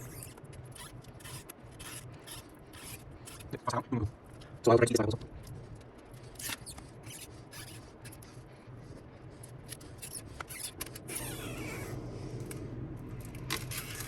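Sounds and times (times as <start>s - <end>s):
adhesive strip squealing: 0.0s - 3.6s, 6.2s - 8.3s, 9.5s - 12.0s, 13.5s - 14.0s.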